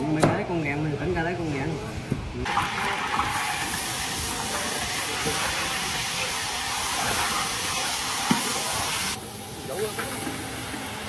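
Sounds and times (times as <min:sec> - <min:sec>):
steam hissing: 0:02.4 - 0:11.0.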